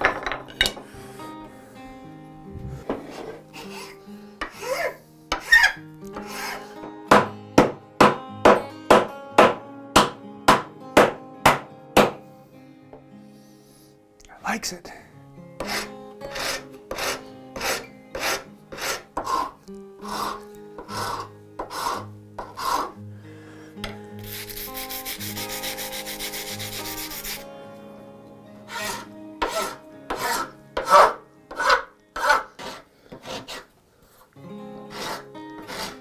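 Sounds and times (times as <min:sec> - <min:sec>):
file scraping wood: 0:02.9 - 0:08.2, 0:15.6 - 0:23.0, 0:24.2 - 0:27.4, 0:28.7 - 0:33.7, 0:34.9 - 0:36.0.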